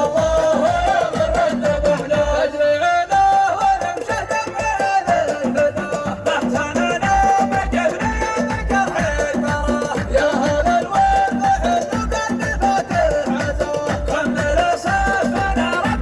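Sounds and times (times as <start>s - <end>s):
chanted song melody: 0.0s - 16.0s
low even beat: 4.2s - 16.0s.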